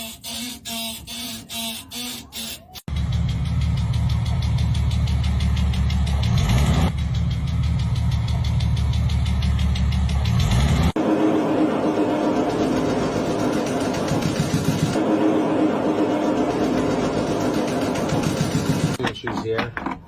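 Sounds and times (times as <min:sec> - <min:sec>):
car engine with ticking knock: 0:02.9 - 0:11.0.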